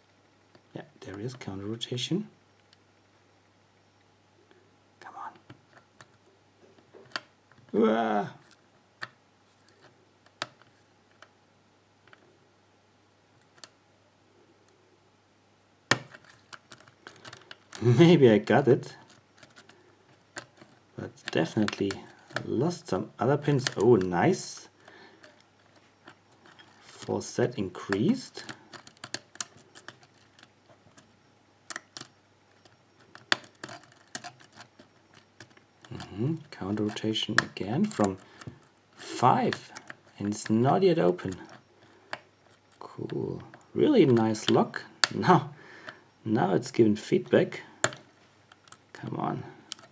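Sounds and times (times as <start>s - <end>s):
lock pick clicks: 31.7s - 36.1s.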